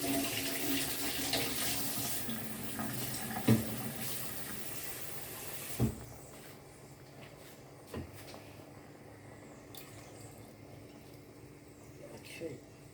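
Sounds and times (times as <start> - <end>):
hot water pouring: 0.0 - 5.9.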